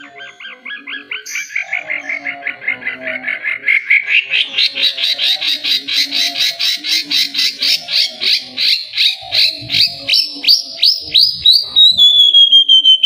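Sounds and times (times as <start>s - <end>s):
low rough chatter: 0.0s - 13.0s.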